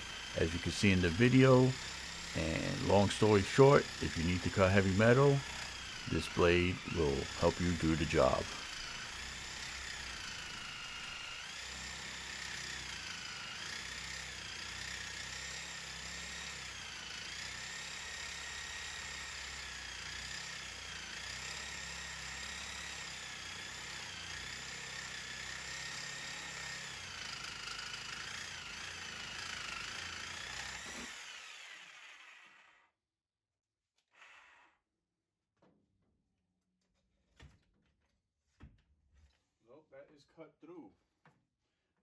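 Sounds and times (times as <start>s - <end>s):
reciprocating saw cutting metal pipe: 0.0s - 32.8s.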